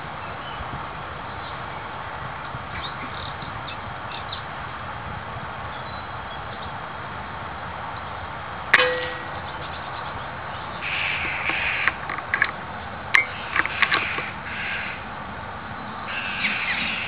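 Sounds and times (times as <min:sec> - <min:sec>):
sharp ringing click: 0:08.8 - 0:09.5, 0:13.2 - 0:14.3
jackdaws calling: 0:08.8 - 0:17.0.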